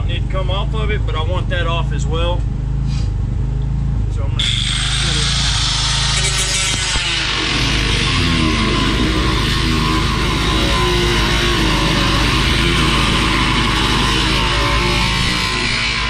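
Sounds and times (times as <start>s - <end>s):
distorted electric guitar: 4.4s - 16.0s
heavy metal music: 6.4s - 16.0s.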